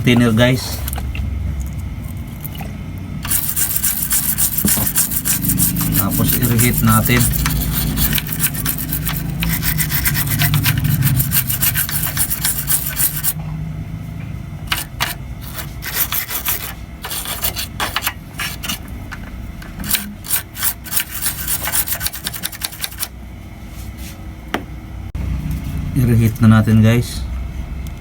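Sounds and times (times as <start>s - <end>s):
brush scrubbing circuit board: 3.2s - 13.4s, 14.7s - 18.8s, 19.8s - 23.1s.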